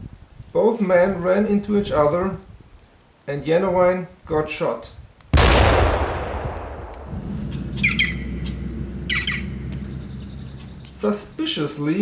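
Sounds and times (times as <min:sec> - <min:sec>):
gunshot echo: 0:05.4 - 0:08.4
harsh squawking bird calls: 0:07.3 - 0:11.2.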